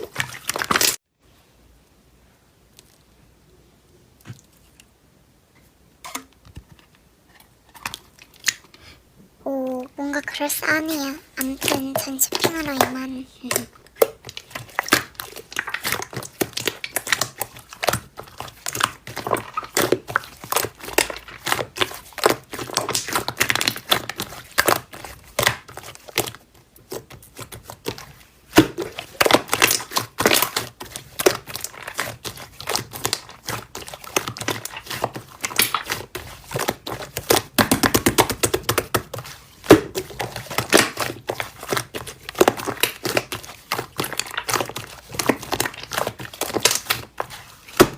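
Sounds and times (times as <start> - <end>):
slime crackling and popping: 10.2 - 47.9.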